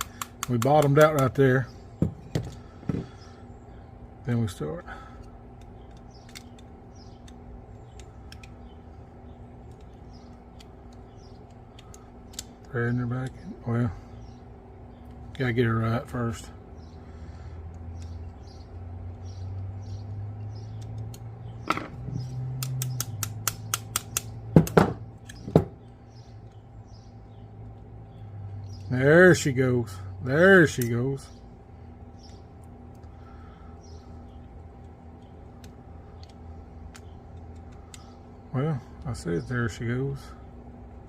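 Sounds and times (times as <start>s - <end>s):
small metal clicks: 0.0s - 1.4s, 5.2s - 8.8s, 9.6s - 13.0s, 17.6s - 26.7s, 34.3s - 38.3s
steady low hum: 0.0s - 41.0s.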